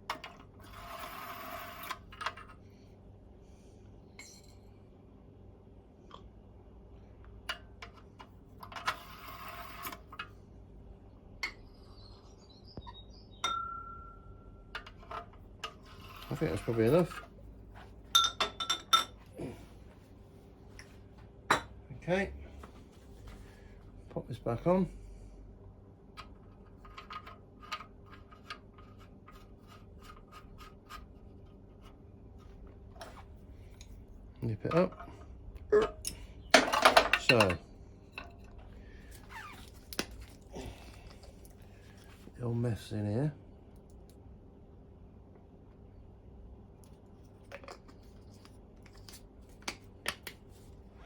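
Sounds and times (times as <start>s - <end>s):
metal-on-metal scrapes: 15.6s - 17.3s.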